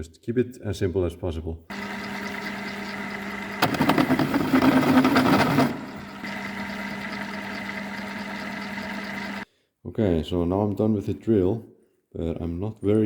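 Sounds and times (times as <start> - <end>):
drill bit grinding into metal: 1.7 - 9.4
electric drill humming: 1.7 - 9.4.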